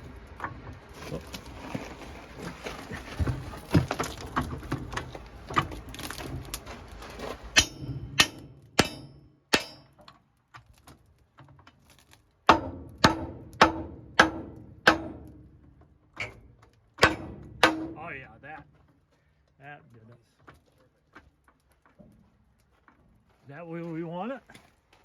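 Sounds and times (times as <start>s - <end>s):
metal clatter: 0.0s - 10.2s, 11.7s - 18.8s
hammer striking steel plate: 7.6s - 10.0s, 12.5s - 15.4s, 17.0s - 18.2s.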